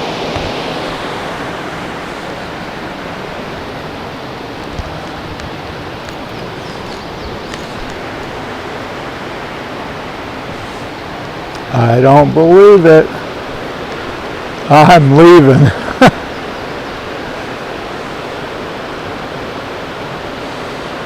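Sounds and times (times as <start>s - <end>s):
creek water flowing: 0.0s - 21.0s.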